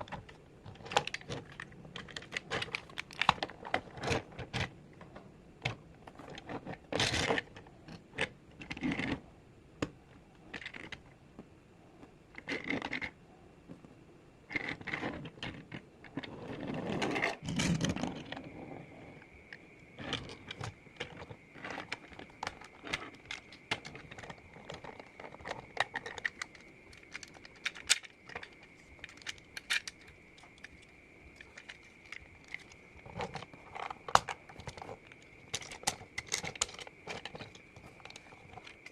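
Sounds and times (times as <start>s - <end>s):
plastic toy parts clicking: 0.0s - 4.7s, 20.0s - 38.9s.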